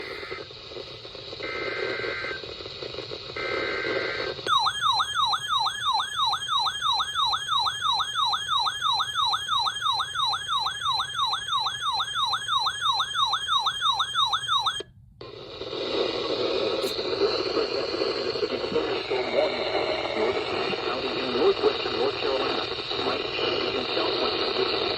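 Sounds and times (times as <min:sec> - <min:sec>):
noisy radio audio: 0:00.0 - 0:04.6, 0:15.2 - 0:24.9
digital data bursts: 0:15.7 - 0:24.9.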